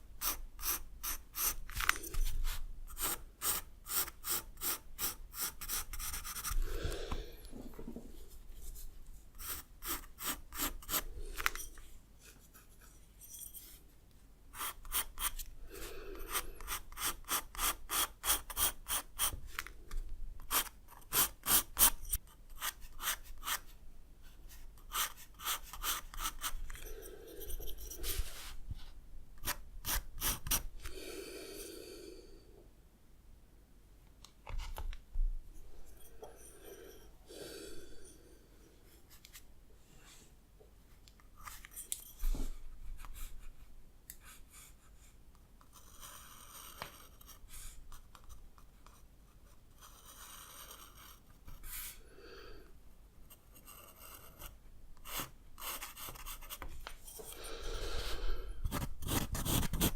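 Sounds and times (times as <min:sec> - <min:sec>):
pencil strokes on paper: 0:00.0 - 0:06.8, 0:08.4 - 0:11.2, 0:14.5 - 0:19.6, 0:20.4 - 0:30.7, 0:43.0 - 0:52.0, 0:53.3 - 0:57.4
soft breaths: 0:06.3 - 0:09.8, 0:15.4 - 0:17.0, 0:26.3 - 0:29.0, 0:30.6 - 0:32.8, 0:35.4 - 0:41.0, 0:51.5 - 0:52.9, 0:56.9 - 0:58.8.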